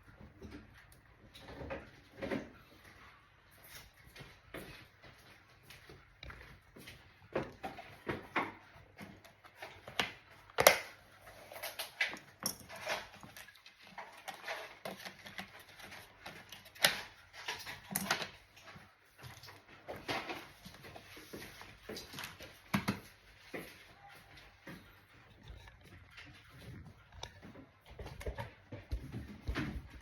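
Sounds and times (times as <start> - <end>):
plastic laptop parts clicking and tapping: 7.3 - 18.7.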